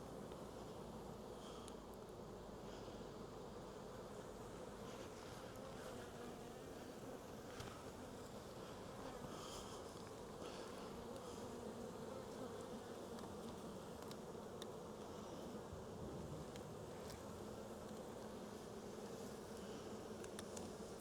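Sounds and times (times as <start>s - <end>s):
honey bees buzzing: 0.0s - 21.0s
faint handling ticks: 12.2s - 15.6s, 16.4s - 21.0s.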